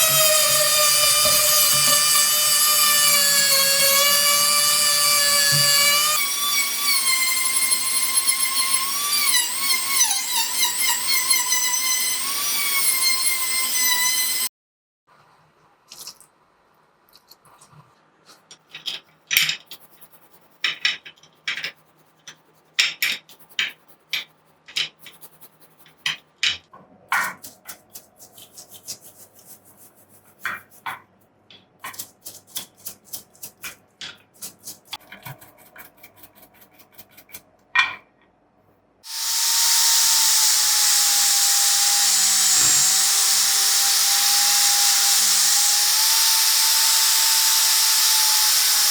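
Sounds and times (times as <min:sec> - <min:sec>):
power tool whining: 0:00.0 - 0:14.5, 0:39.1 - 0:48.9.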